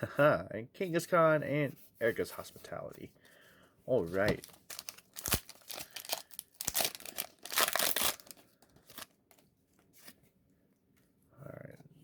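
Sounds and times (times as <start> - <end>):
foil wrapper tearing and crinkling: 4.2 - 9.1.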